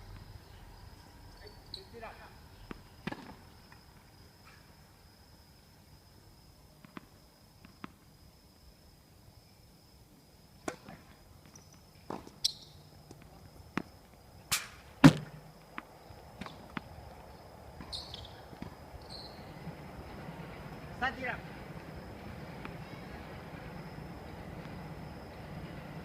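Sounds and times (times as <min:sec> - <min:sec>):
tennis balls bouncing on court: 0:02.6 - 0:03.4, 0:06.8 - 0:08.0, 0:10.6 - 0:14.2, 0:15.0 - 0:18.8, 0:22.6 - 0:22.8
tennis balls struck by rackets: 0:02.6 - 0:03.5, 0:06.8 - 0:08.0, 0:10.6 - 0:11.0, 0:12.0 - 0:17.2, 0:22.6 - 0:22.8.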